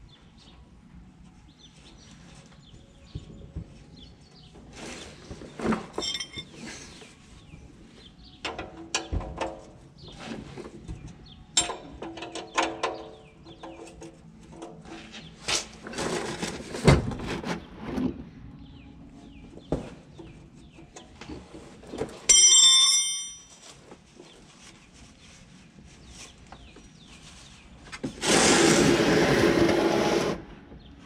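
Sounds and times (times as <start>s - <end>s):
birds chirping: 1.5s - 14.4s, 17.6s - 21.6s, 24.2s - 29.1s
hand tools clanking and ratcheting: 5.7s - 6.8s, 8.4s - 9.7s, 11.6s - 15.0s, 21.0s - 23.7s.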